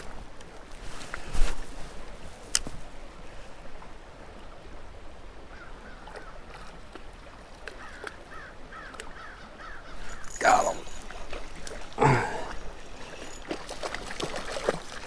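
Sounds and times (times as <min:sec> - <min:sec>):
stream water rushing: 0:09.9 - 0:15.0.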